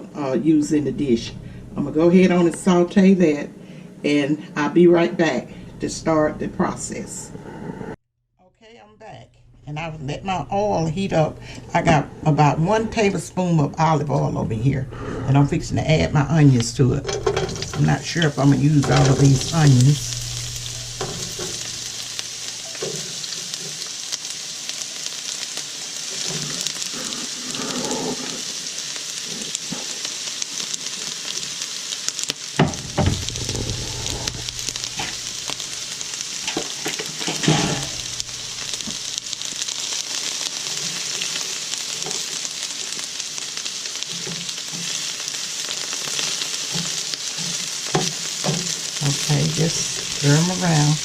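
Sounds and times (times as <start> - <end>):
onions sizzling in a frying pan: 15.4 - 51.0
knocks and clatters: 17.0 - 17.9, 32.6 - 33.6.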